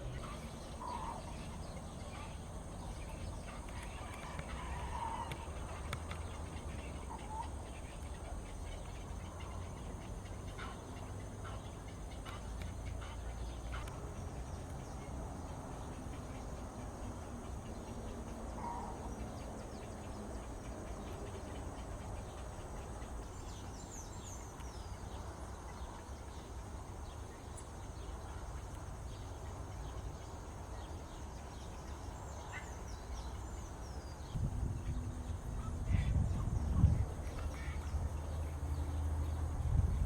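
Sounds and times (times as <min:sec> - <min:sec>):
small birds calling: 0:00.0 - 0:40.0
steady low rumble: 0:32.9 - 0:40.0.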